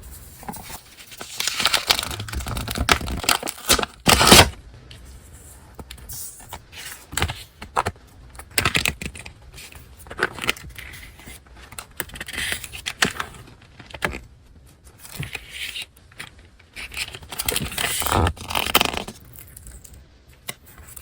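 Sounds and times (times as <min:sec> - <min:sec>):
paper rustling and crinkling: 0:00.3 - 0:05.5.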